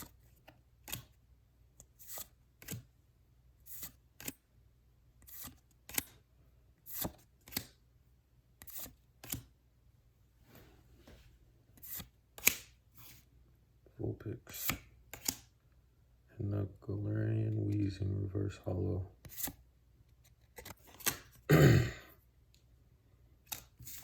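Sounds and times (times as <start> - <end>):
cards sliding with soft swish: 1.8 - 2.9, 3.6 - 4.4, 5.2 - 6.2, 6.8 - 7.8, 8.6 - 9.5, 10.4 - 13.3, 19.2 - 19.6, 23.5 - 24.0.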